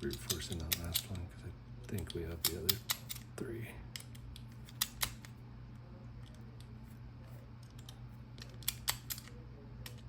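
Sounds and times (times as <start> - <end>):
combination lock wheel clicking: 1.9 - 3.3, 7.7 - 10.0.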